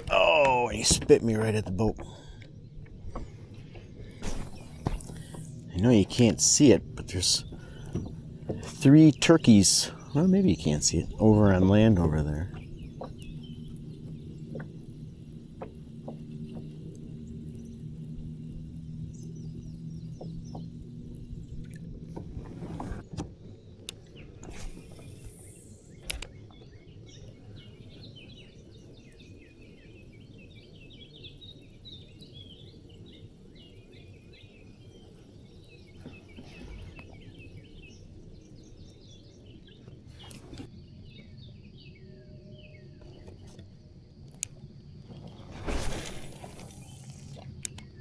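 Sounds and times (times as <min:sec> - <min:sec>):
songbirds chirping: 0:00.0 - 0:48.0
sharp clicks: 0:23.8 - 0:26.6.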